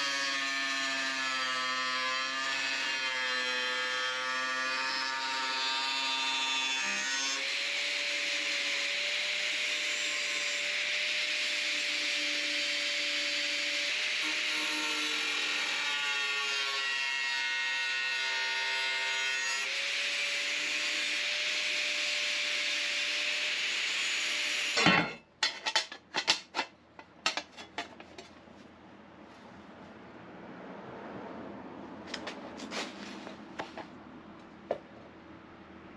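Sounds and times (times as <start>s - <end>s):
power tool grinding steel: 0.0s - 25.1s.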